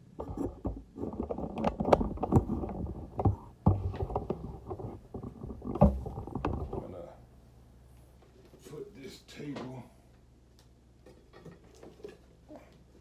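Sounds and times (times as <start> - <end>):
knocks and clicks of objects: 0.2 - 7.0
muffled microphone handling noise: 0.2 - 7.2.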